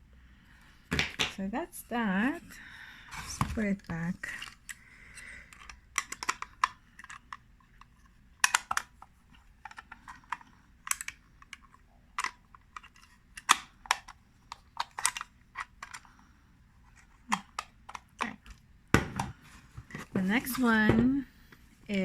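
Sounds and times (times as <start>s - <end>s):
camera parts clicking: 5.5s - 9.0s, 9.6s - 16.1s.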